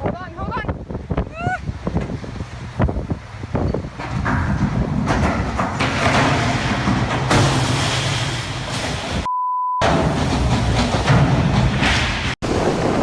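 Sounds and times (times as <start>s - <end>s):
rushing wind and water: 0.0s - 9.3s, 10.0s - 13.0s
censor bleep: 9.3s - 9.8s
steady high beep: 9.3s - 9.8s.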